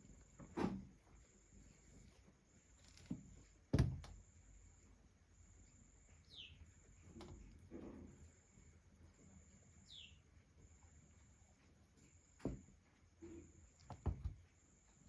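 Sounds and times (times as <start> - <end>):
soft knocks and thumps: 3.1 - 4.1, 12.4 - 12.8, 13.9 - 14.5.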